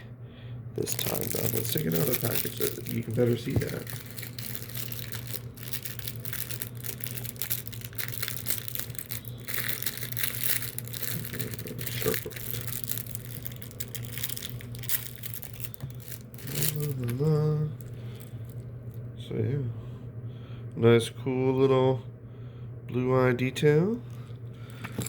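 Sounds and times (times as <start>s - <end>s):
low hum: 0.0s - 22.9s
plastic packaging crinkling: 0.8s - 19.0s.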